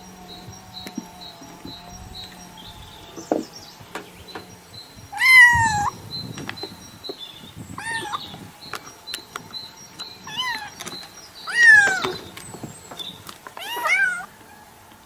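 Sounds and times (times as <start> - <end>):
cat meowing: 5.2 - 5.9, 7.8 - 8.2, 10.3 - 10.7, 11.5 - 12.1, 13.6 - 14.3.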